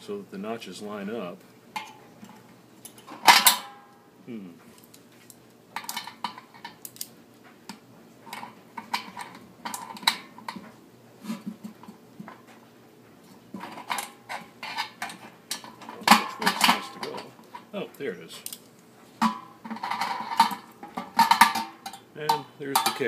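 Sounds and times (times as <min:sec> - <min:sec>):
metal clinks and scrapes: 0:13.2 - 0:17.7, 0:19.2 - 0:23.0.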